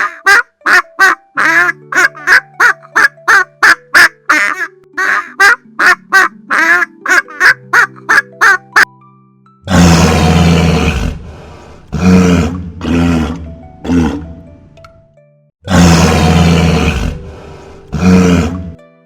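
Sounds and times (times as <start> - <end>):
fowl calling: 0.0 - 8.9.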